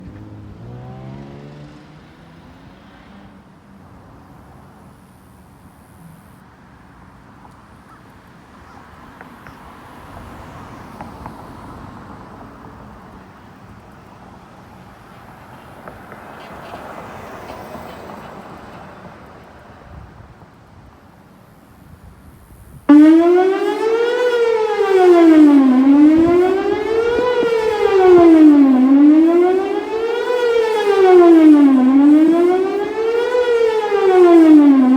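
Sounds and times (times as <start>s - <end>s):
warning siren wailing: 22.9s - 34.9s.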